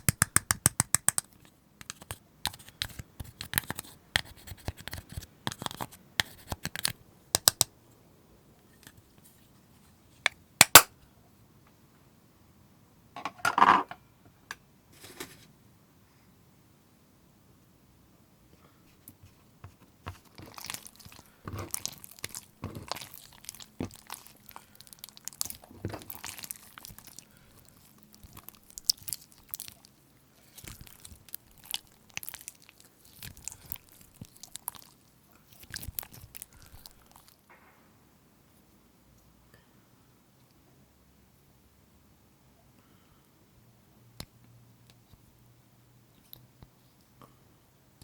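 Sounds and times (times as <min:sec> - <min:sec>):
slime crackling and popping: 0:20.2 - 0:37.5.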